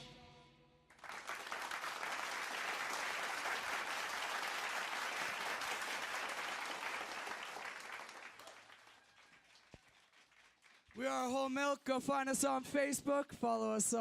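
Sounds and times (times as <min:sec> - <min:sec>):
audience applauding: 0:00.9 - 0:11.1.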